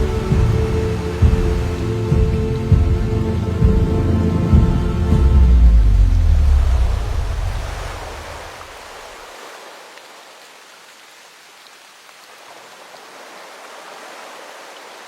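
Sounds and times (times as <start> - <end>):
background music: 0.0 - 8.0
steady rushing noise: 0.0 - 9.6.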